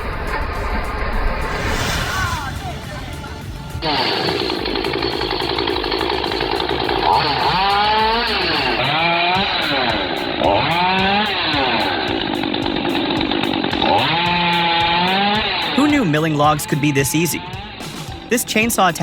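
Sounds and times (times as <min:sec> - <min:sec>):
chainsaw cutting wood: 0:03.8 - 0:15.8, 0:17.4 - 0:18.3.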